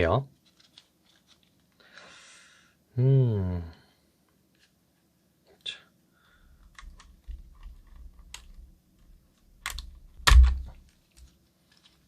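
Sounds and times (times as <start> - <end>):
small plastic clicks: 9.6 - 12.0.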